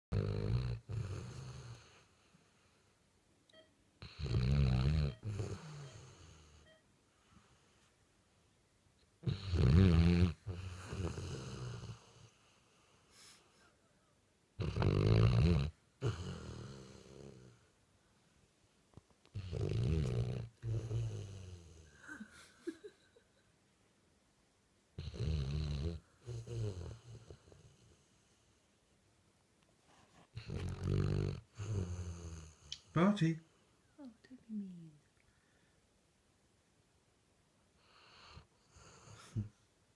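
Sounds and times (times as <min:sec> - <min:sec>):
dog snoring: 0:00.1 - 0:02.3, 0:04.0 - 0:06.7, 0:09.2 - 0:12.9, 0:14.6 - 0:17.6, 0:19.3 - 0:22.0, 0:25.0 - 0:28.1, 0:30.3 - 0:32.9, 0:37.8 - 0:39.6.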